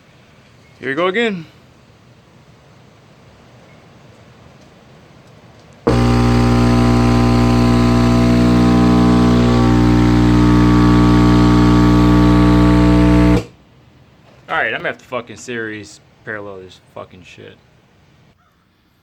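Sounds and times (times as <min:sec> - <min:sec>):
subwoofer deep hum and buzzing: 0:05.9 - 0:13.6.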